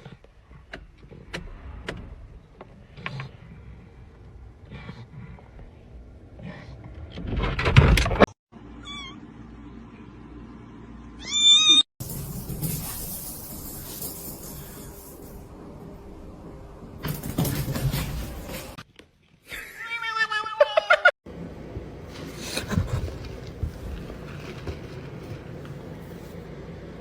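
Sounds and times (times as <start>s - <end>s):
cat meowing: 8.8s - 9.2s.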